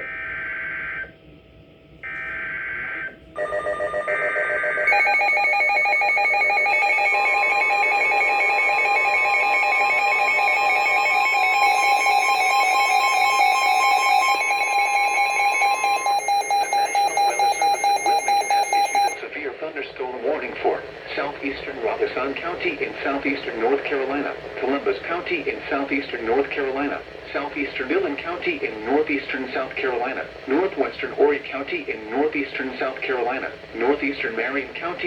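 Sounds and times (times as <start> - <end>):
rapid alarm beeps: 3.4 - 19.2
steady attention tone: 4.9 - 19.2
warbling data tones: 4.9 - 19.2.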